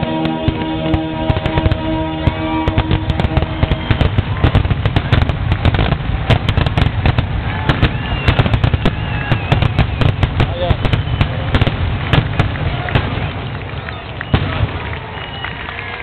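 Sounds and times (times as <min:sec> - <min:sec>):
music: 0:00.0 - 0:04.5
distant fireworks barrage: 0:00.0 - 0:15.8.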